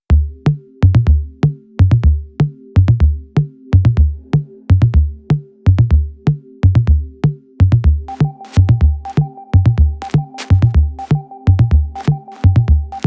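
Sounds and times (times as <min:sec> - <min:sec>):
booming drum machine kick: 0:00.1 - 0:02.2, 0:09.6 - 0:13.0.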